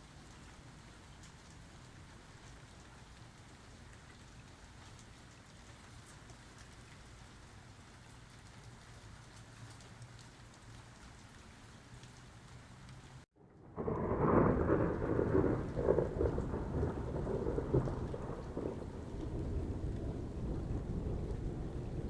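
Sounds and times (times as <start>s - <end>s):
light rain falling: 0.0s - 22.0s
rolling thunder: 13.6s - 22.0s.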